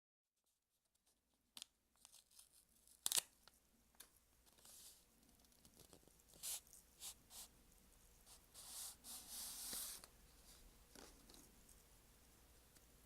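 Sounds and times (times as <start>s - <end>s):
tearing and crinkling: 2.0s - 3.3s.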